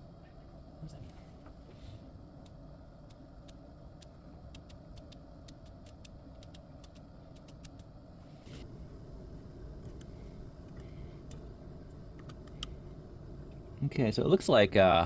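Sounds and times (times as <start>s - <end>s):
faint steady low hum: 0.0s - 15.0s
light crisp ticks: 2.4s - 7.9s.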